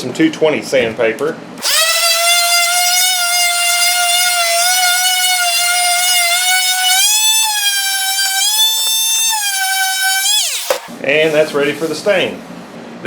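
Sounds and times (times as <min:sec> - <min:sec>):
power sander whine: 0:01.6 - 0:10.9.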